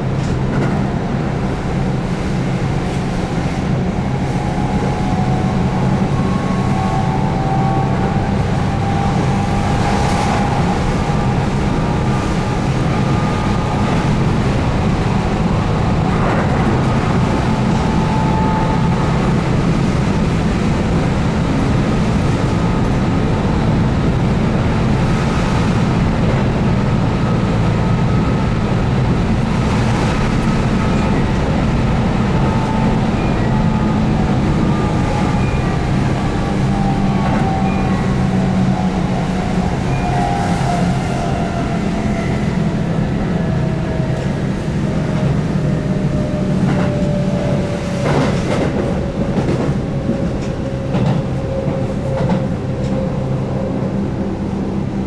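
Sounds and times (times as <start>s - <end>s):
train wheels rumbling on rails: 0.0s - 55.0s.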